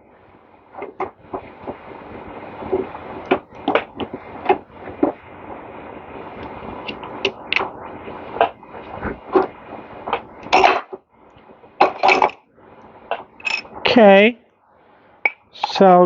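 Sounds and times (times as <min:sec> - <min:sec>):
low background hiss: 0:00.0 - 0:16.0
hand tools and metal parts knocking: 0:13.4 - 0:13.7.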